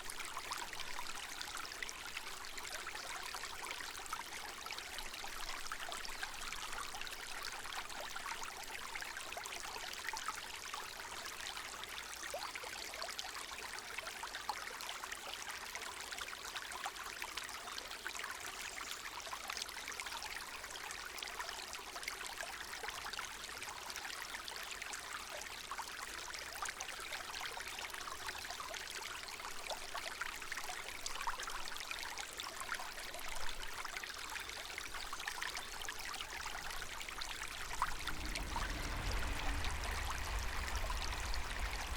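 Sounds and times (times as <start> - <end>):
stream trickling over stones: 0.0 - 41.9.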